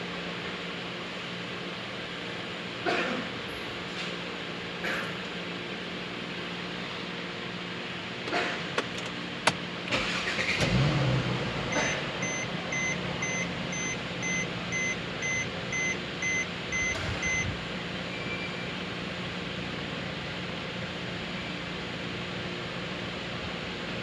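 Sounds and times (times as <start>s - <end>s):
steady low hum: 11.2s - 17.8s
car warning chime beeping: 11.5s - 17.6s.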